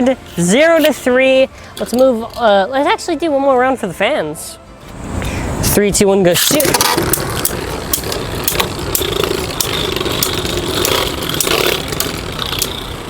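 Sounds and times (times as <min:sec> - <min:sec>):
spinning tops whirring: 0:06.4 - 0:13.0.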